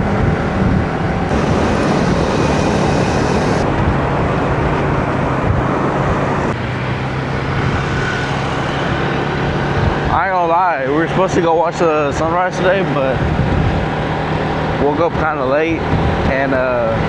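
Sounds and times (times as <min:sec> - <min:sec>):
road and wind noise: 0:00.0 - 0:17.0
vehicle engine hum: 0:01.2 - 0:10.1.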